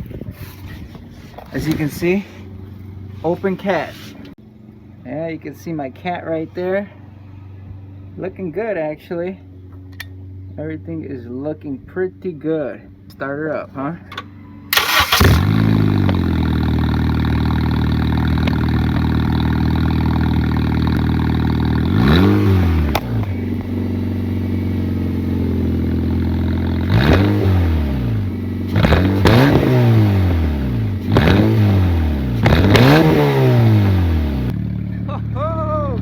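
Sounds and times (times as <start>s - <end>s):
car engine revving open exhaust: 14.9s - 36.0s.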